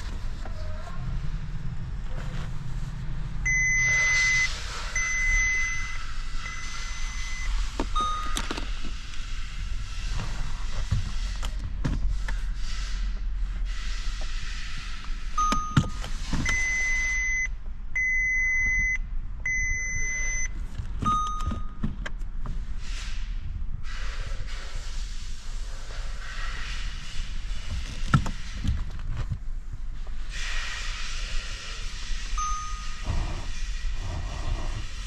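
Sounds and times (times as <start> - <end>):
electronic beeps: 3.5 - 8.6.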